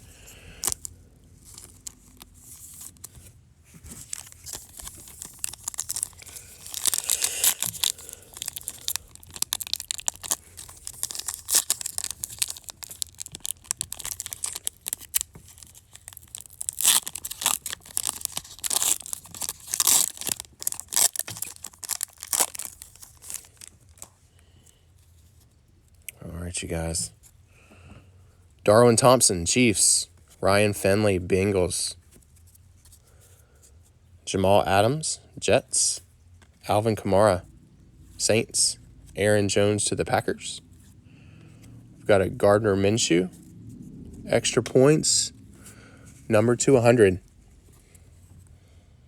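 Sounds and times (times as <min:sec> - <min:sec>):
foil wrapper tearing and crinkling: 0:03.9 - 0:24.1.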